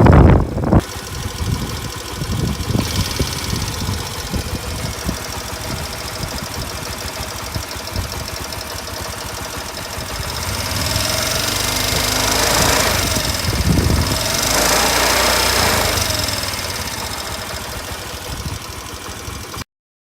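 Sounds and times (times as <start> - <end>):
motorcycle engine running: 0.0 - 19.6
rapid engine clicking: 0.1 - 19.6.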